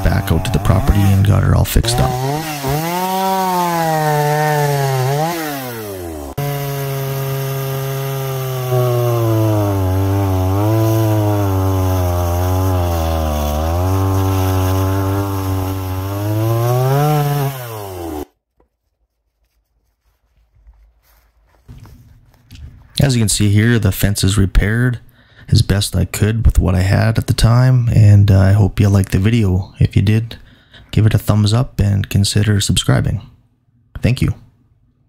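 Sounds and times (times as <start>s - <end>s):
chainsaw cutting wood: 0.0s - 18.3s.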